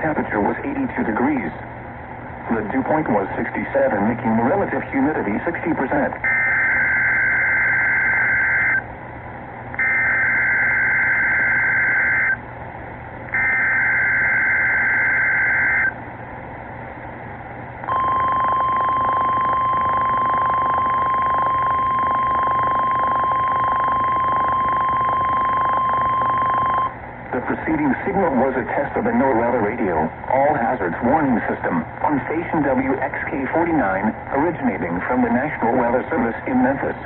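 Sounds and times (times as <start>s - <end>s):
receiver hiss: 0.0s - 37.0s
steady warning alarm tone: 6.2s - 8.9s, 9.8s - 12.4s, 13.3s - 16.0s, 17.8s - 27.0s.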